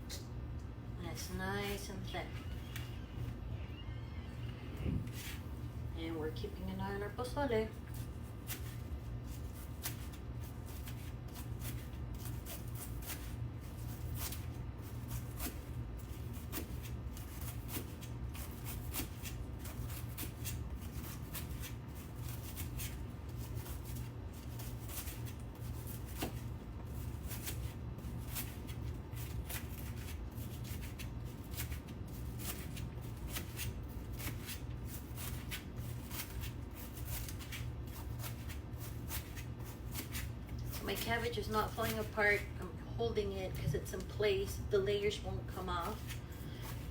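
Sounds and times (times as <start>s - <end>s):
knife slicing cabbage on board: 7.8s - 42.5s.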